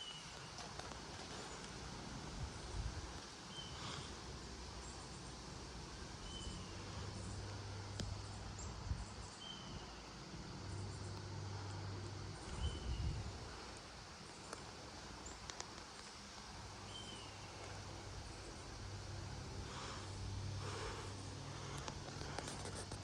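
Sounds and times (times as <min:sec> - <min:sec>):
low steady hum: 0:00.0 - 0:23.0
bird chirping: 0:06.2 - 0:07.4, 0:08.2 - 0:10.1, 0:12.4 - 0:13.3, 0:16.8 - 0:17.6
gusty wind: 0:12.4 - 0:13.7.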